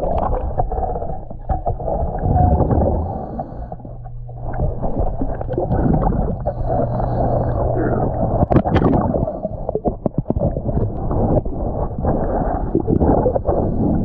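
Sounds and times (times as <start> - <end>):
bubbles gurgling underwater: 0.0 - 14.0
steady low hum: 0.0 - 14.0.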